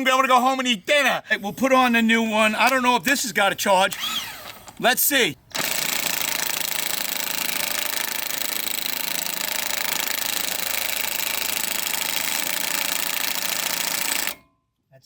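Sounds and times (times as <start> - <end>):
impact wrench hammering: 5.5 - 14.4.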